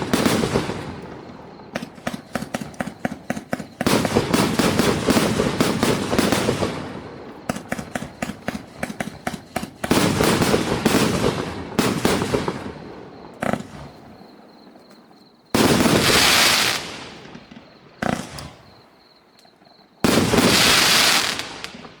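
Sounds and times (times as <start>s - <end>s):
fireworks hissing crackle: 0.0s - 12.8s, 15.6s - 17.4s, 20.0s - 22.0s
fireworks shots and bursts: 0.0s - 14.5s, 15.5s - 19.0s, 20.0s - 22.0s.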